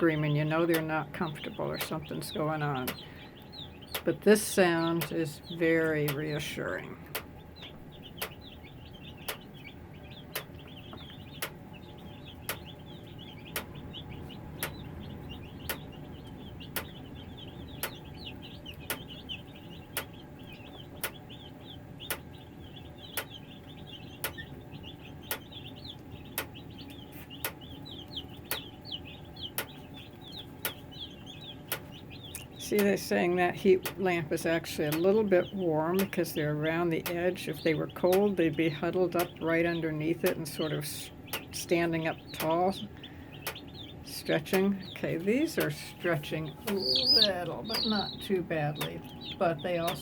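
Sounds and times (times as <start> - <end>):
baby chicks peeping: 0.0 - 50.0
space heater humming: 0.0 - 50.0
electric fence charger clicking: 0.6 - 4.2, 12.4 - 19.3, 19.9 - 21.4, 23.0 - 33.0, 33.8 - 35.2, 36.9 - 37.4, 42.3 - 42.6, 43.4 - 43.8.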